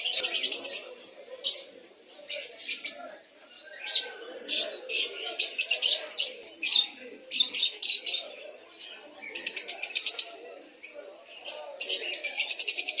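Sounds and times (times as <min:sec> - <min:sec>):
birds chirping and trilling: 0:00.0 - 0:13.0.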